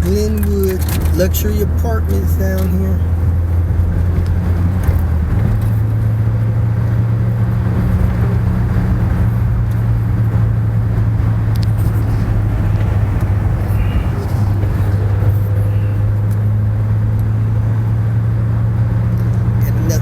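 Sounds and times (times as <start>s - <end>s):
car engine and road drone: 0.0s - 20.0s.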